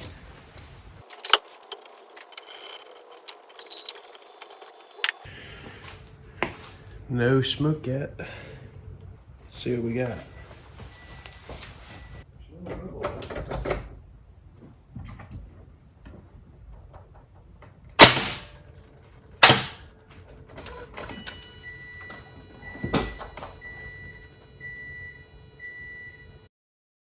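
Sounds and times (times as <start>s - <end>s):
car warning chime beeping: 20.8s - 26.5s.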